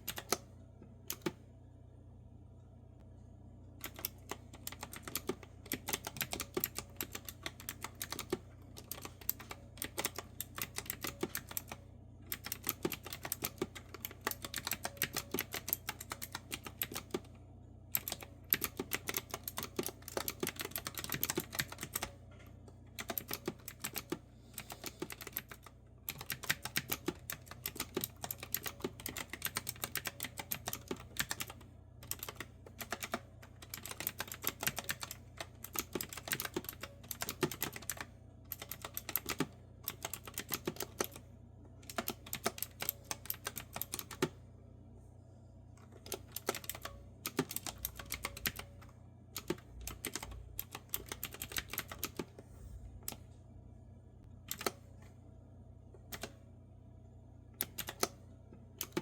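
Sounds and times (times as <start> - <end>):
clicky keyboard typing: 0.0 - 0.5, 1.1 - 1.4, 3.8 - 17.3, 17.9 - 44.4, 45.8 - 52.4, 54.5 - 54.8, 56.1 - 56.4, 57.6 - 58.2, 58.8 - 59.0.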